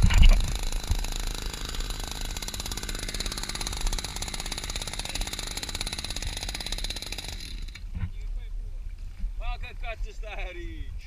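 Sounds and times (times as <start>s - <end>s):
fast mechanical rattle: 0.0s - 7.9s.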